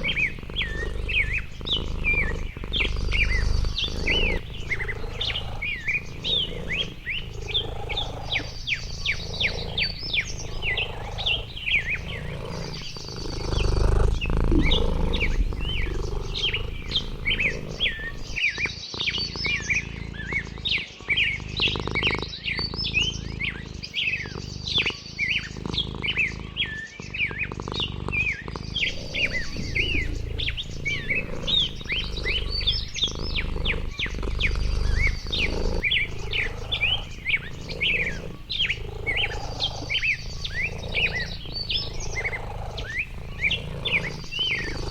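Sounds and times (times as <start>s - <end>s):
low background rumble: 0.0s - 18.4s, 28.7s - 44.9s
small birds chirping and trilling: 0.0s - 44.9s.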